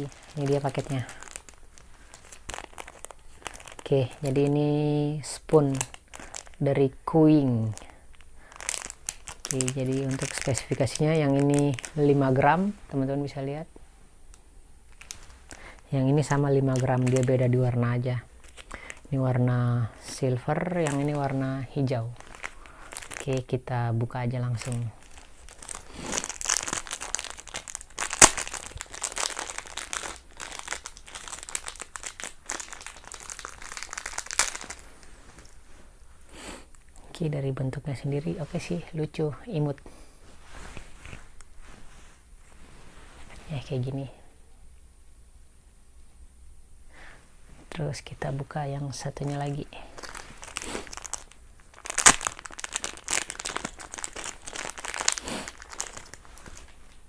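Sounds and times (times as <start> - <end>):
packet crinkling and rustling: 0.0 - 13.4, 14.9 - 37.0, 47.5 - 57.0.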